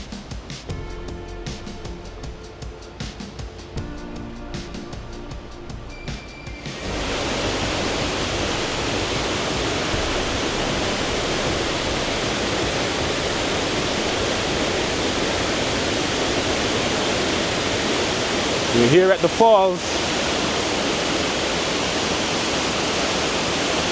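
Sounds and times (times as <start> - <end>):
waterfall rushing: 6.2 - 23.9.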